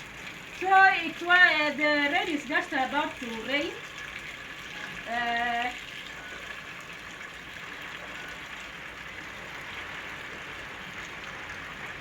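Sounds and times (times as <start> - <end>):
rain hissing: 4.6 - 12.0.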